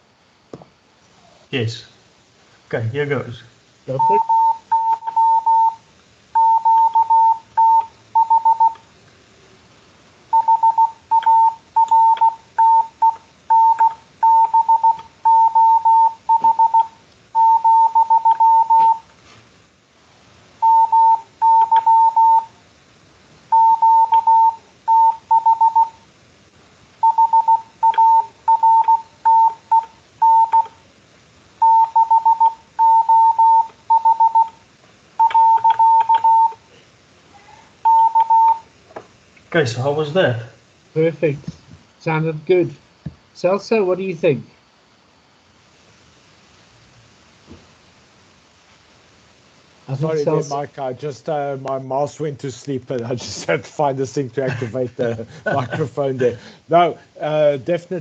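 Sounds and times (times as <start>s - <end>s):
morse code beep tone: 3.9s - 5.8s, 6.4s - 8.8s, 10.3s - 19.1s, 20.6s - 22.5s, 23.5s - 26.0s, 27.0s - 30.7s, 31.6s - 34.6s, 35.2s - 36.6s, 37.8s - 38.7s.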